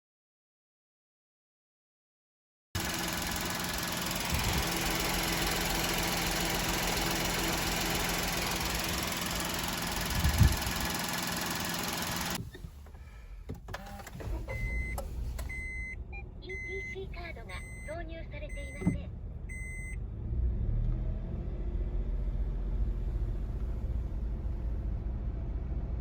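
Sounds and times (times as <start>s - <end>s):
car transmission whining: 2.8s - 20.1s
road noise: 2.8s - 25.9s
short high beeps: 14.6s - 20.0s.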